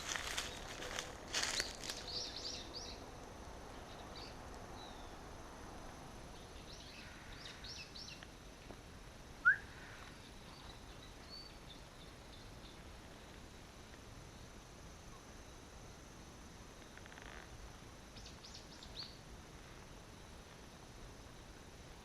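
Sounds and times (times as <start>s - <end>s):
rustling: 0.0s - 2.2s
wild birds chirping: 0.0s - 3.1s, 6.3s - 8.2s, 9.4s - 13.3s.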